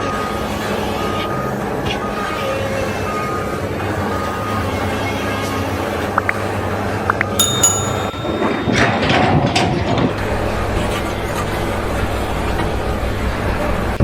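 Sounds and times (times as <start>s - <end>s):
high ringing tone: 7.4s - 10.0s.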